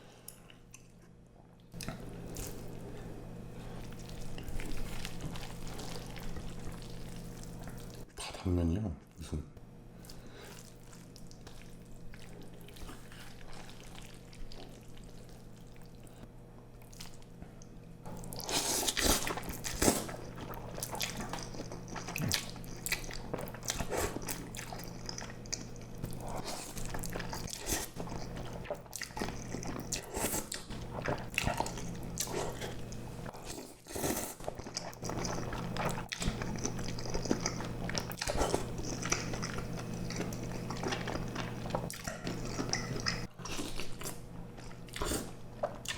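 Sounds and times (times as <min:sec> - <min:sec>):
close chewing: 0:18.1 - 0:45.9.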